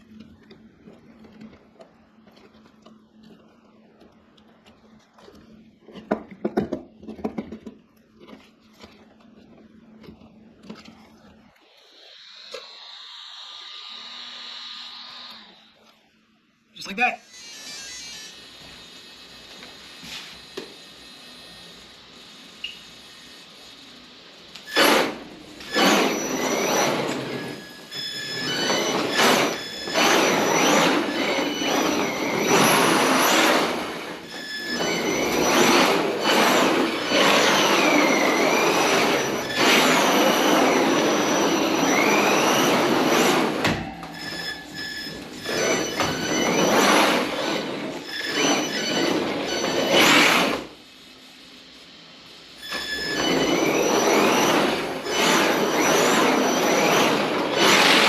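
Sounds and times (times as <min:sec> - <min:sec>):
electric motor whine: 0:08.9 - 0:16.6, 0:17.2 - 0:50.8, 0:52.7 - 0:58.0
wheels squealing: 0:24.7 - 0:50.8, 0:52.6 - 0:58.0.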